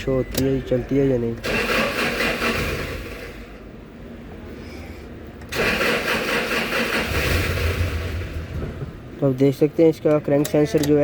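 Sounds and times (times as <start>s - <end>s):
starter motor cranking engine: 1.3s - 3.4s, 5.4s - 8.4s.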